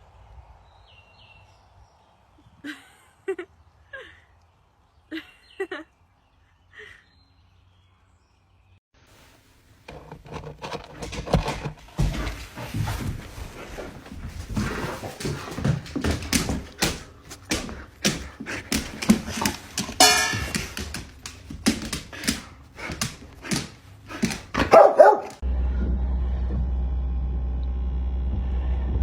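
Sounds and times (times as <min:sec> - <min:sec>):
dog barking and yipping: 0:24.5 - 0:25.4
steady low hum: 0:25.4 - 0:29.0.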